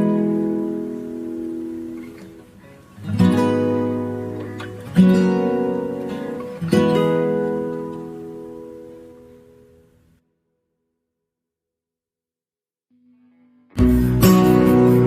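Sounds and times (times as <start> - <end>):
acoustic guitar chords strummed: 0.0 - 10.1, 13.0 - 15.0.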